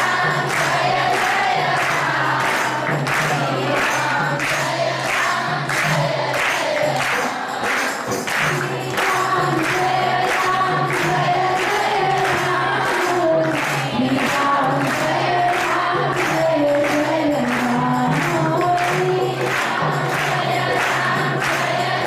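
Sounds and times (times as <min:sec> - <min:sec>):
group singing devotional song: 0:00.0 - 0:22.0
steady percussion beat: 0:00.0 - 0:22.0.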